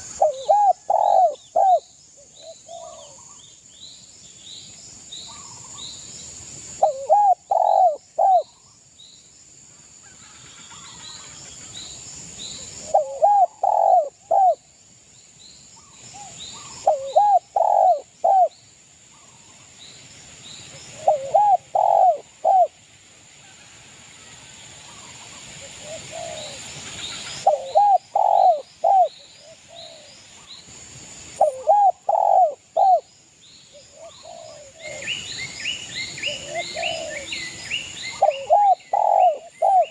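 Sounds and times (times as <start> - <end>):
dove cooing: 0.0 - 3.2, 6.8 - 8.6, 12.8 - 14.6, 16.6 - 18.5, 20.9 - 22.8, 25.8 - 26.6, 27.4 - 30.1, 31.4 - 33.1, 33.9 - 35.2, 36.2 - 37.4, 38.1 - 39.9
small birds chirping: 0.0 - 6.1, 10.7 - 22.8, 24.9 - 30.7, 31.3 - 39.9.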